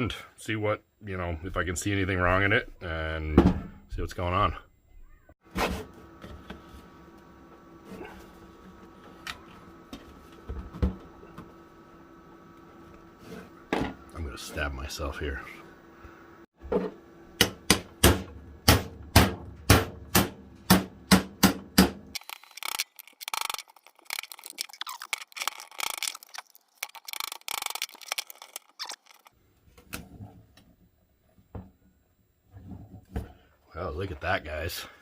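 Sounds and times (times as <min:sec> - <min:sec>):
plastic case crackling and scraping: 0:22.2 - 0:29.3.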